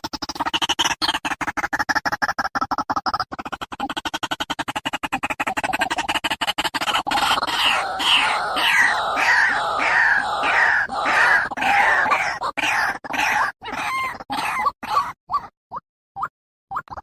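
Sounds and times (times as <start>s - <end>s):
waterhen calling harsh notes: 7.0s - 15.2s.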